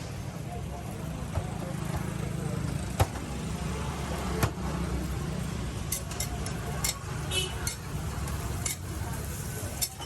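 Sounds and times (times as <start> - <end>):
metal utensils clinking: 5.9 - 10.0.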